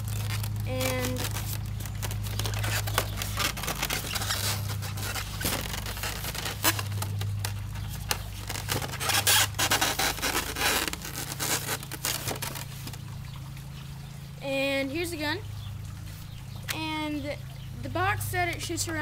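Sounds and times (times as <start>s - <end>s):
cardboard packaging rustling: 0.0s - 13.1s
low electrical hum: 0.0s - 19.0s.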